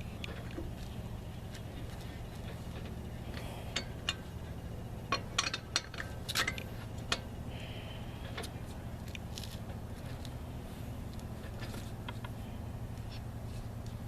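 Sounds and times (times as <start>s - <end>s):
steady low hum: 0.0s - 14.0s
lug wrench clinking on nut: 2.7s - 4.3s, 5.1s - 7.3s.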